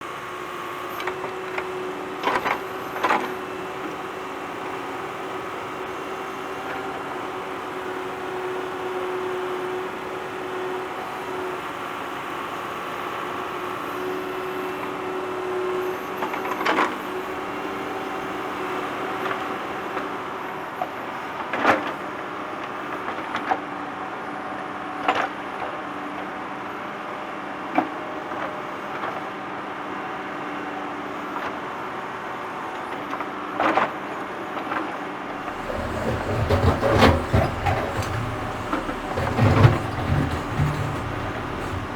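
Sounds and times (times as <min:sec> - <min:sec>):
digging knocks and clanks: 0:35.4 - 0:41.9
tractor engine running: 0:35.4 - 0:41.9.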